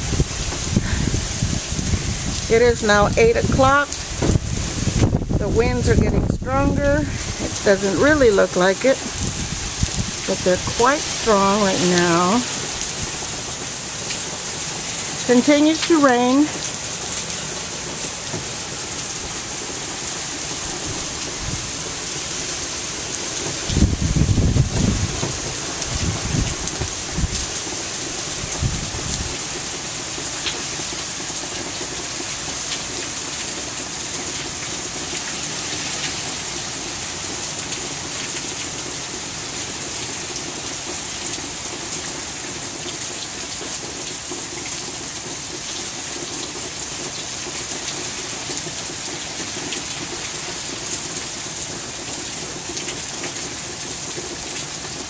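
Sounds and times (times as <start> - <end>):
wind buffeting microphone: 0.0 - 8.3, 9.0 - 11.3, 23.6 - 27.6, 28.4 - 29.4
heavy rain falling: 0.0 - 55.0.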